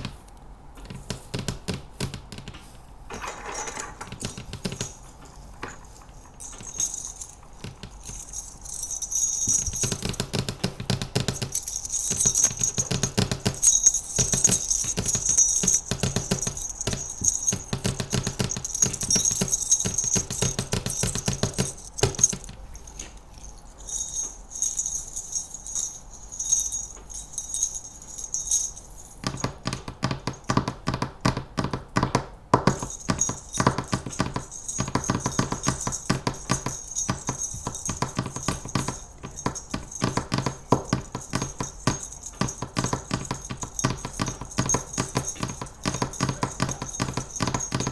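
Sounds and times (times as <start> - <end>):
fingernail tapping: 0.8 - 2.8, 3.6 - 23.1
small jingle bells jingling: 2.7 - 30.8, 32.6 - 47.9.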